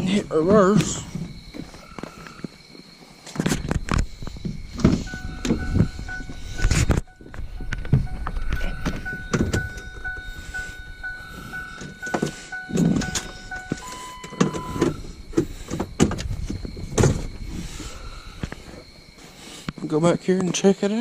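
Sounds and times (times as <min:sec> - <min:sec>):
handling knocks and thumps: 0:03.3 - 0:10.3, 0:11.6 - 0:17.6
steady electronic tone: 0:04.7 - 0:15.4
electronic beeping: 0:04.8 - 0:15.0.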